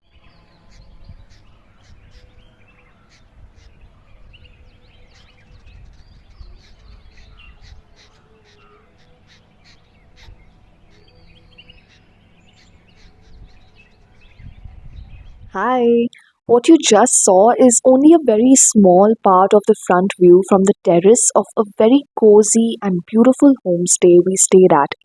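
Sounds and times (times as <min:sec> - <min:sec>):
birds chirping: 0:00.1 - 0:17.0.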